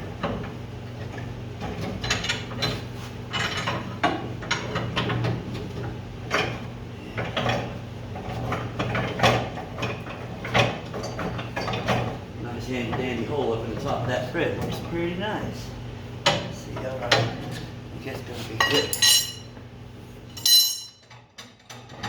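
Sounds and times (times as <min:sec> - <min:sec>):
steady low hum: 0:12.1 - 0:21.1
hand tools clinking on metal: 0:18.6 - 0:19.6, 0:20.4 - 0:21.2.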